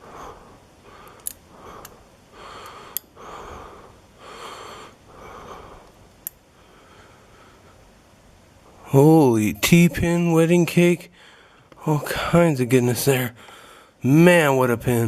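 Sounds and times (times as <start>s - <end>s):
close breathing: 0.0s - 7.9s, 11.1s - 12.3s, 13.4s - 14.0s
small metal clicks of tools: 1.1s - 1.4s, 2.9s - 3.1s, 5.8s - 6.4s.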